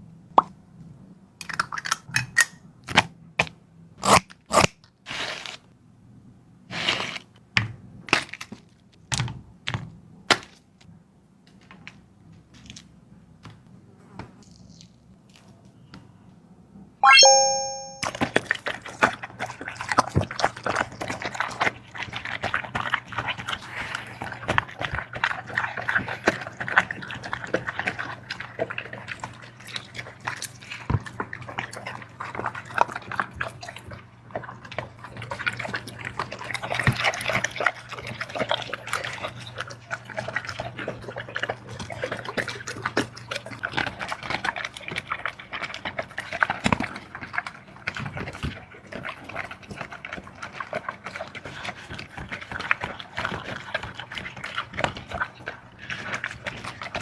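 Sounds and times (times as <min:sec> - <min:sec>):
short ringing tone: 0:17.0 - 0:18.2
dog chewing wet food: 0:18.4 - 0:57.0.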